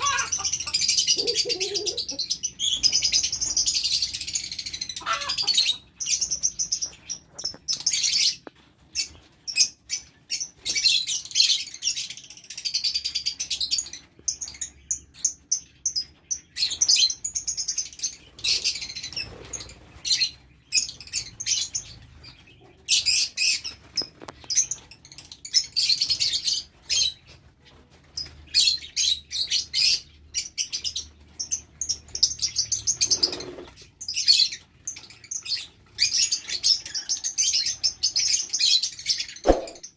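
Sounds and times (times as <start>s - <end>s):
flock of birds chirping shrilly: 0.0s - 7.2s.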